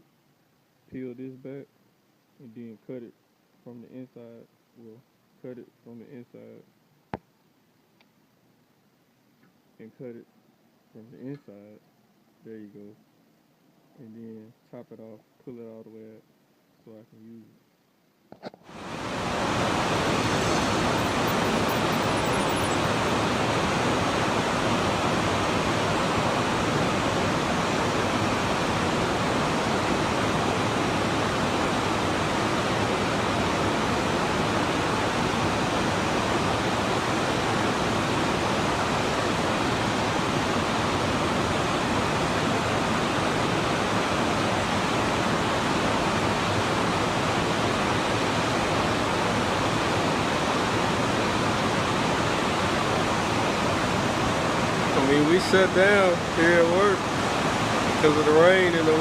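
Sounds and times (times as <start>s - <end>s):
heavy rain: 18.7s - 59.0s.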